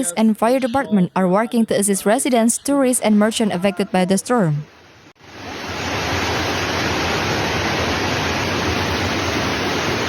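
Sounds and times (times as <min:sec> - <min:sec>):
floodwater rushing: 0:04.7 - 0:10.0.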